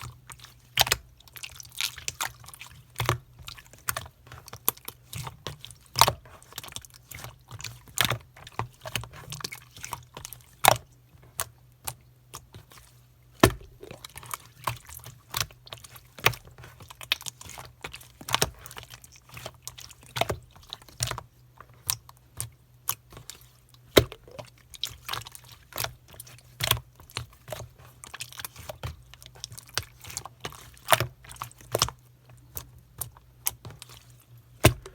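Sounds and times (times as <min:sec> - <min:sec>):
wet clicks and pops of slime: 0:34.6 - 0:34.9.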